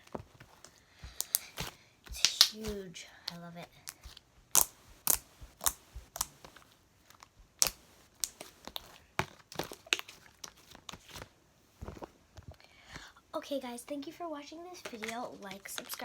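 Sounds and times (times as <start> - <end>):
slime squished by hand popping: 3.9 - 6.4.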